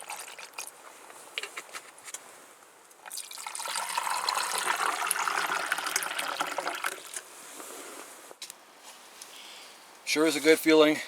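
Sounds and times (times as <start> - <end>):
liquid pouring: 0.0 - 0.7, 3.0 - 7.2.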